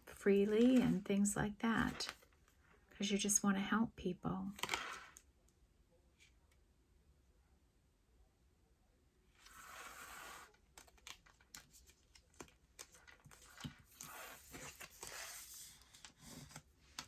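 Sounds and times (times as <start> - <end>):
cards rustling on table: 0.0 - 1.1, 1.8 - 2.3, 4.6 - 5.2, 9.4 - 17.0.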